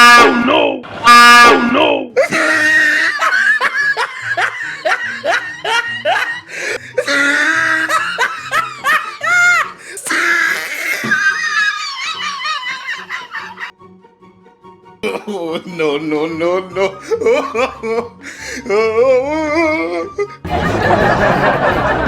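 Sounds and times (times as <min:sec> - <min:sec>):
hearty laughter: 0:02.2 - 0:10.0, 0:10.8 - 0:13.7, 0:16.4 - 0:18.9, 0:19.8 - 0:22.0.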